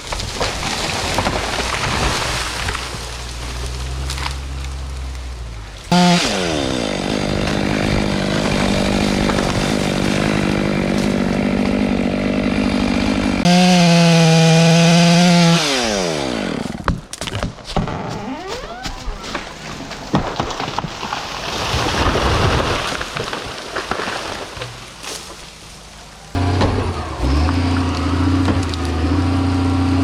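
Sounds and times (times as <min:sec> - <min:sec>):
chainsaw cutting wood: 0:00.0 - 0:05.0, 0:05.9 - 0:18.6, 0:26.3 - 0:30.0.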